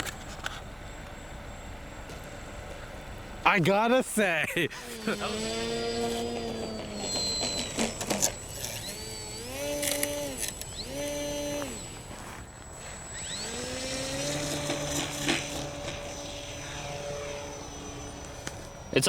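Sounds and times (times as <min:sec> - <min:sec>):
electric motor and propeller whine: 0:00.0 - 0:19.0
sharp clicks: 0:04.9 - 0:19.0.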